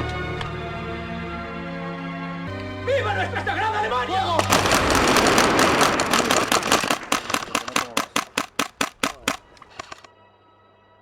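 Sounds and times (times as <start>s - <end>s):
rapid gunshots: 4.4s - 10.1s.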